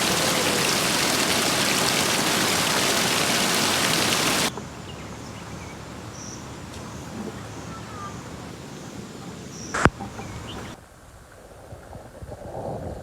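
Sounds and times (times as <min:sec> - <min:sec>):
loud rushing water: 0:00.0 - 0:04.5.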